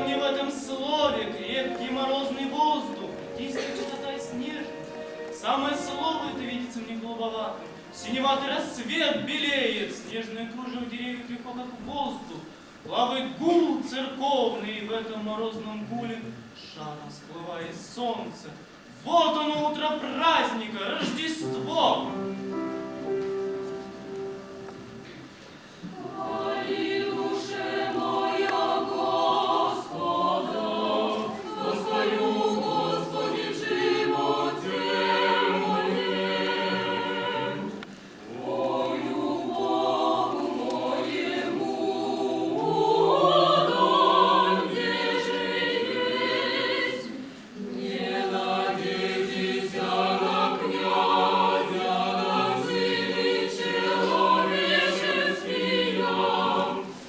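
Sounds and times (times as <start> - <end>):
choir singing: 0.0 - 11.5, 25.8 - 57.0.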